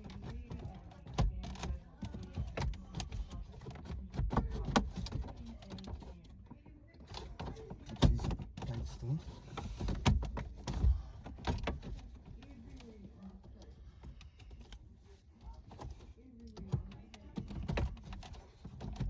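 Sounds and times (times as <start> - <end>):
tools clicking and knocking: 15.6 - 19.0.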